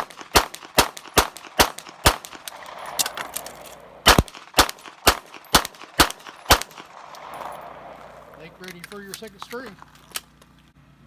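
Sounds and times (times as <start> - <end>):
pistol shots: 0.0 - 3.4, 4.0 - 8.4.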